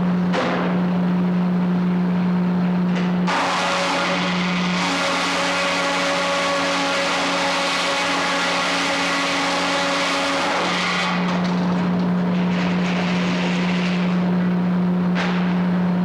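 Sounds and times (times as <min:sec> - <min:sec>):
steady machine hum: 0:00.0 - 0:16.0
circular saw blade cutting log: 0:03.3 - 0:11.5.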